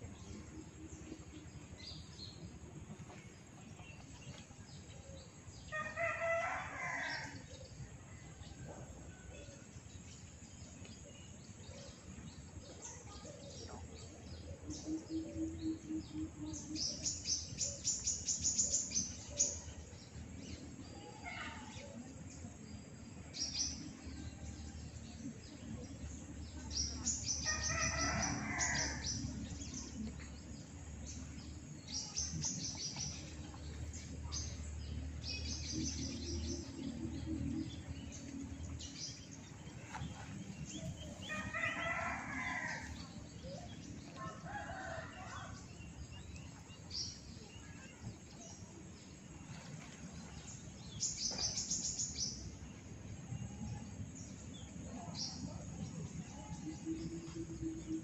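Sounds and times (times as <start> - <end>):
rooster crowing: 41.4 - 42.9.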